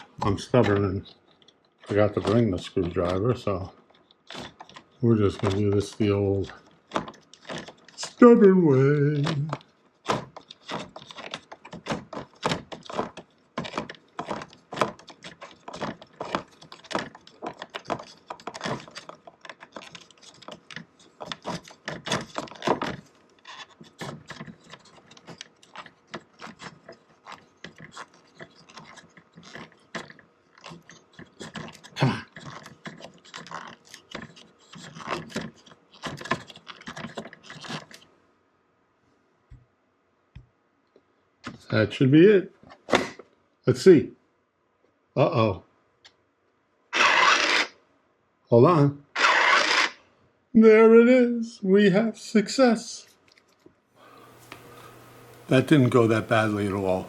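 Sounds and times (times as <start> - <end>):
plastic cover clicking and scraping: 0.0 - 38.1.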